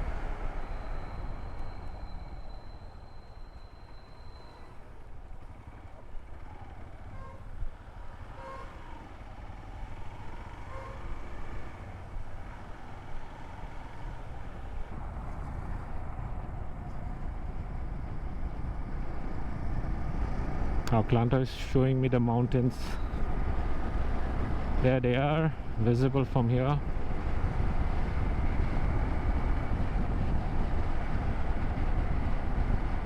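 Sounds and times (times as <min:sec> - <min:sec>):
motorcycle engine running: 0:00.0 - 0:20.8.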